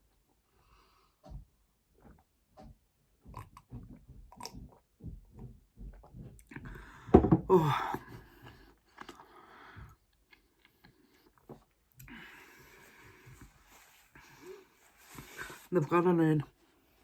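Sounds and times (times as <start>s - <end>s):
chewing food with wet mouth noises: 2.0s - 6.9s, 8.4s - 12.1s.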